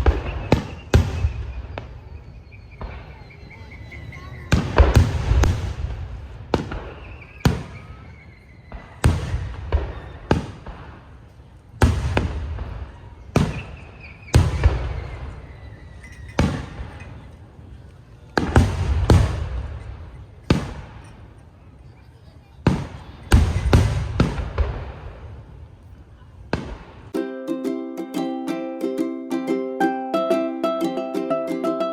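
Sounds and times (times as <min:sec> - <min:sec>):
fireworks shells bursting: 0:00.0 - 0:02.2, 0:13.4 - 0:17.4.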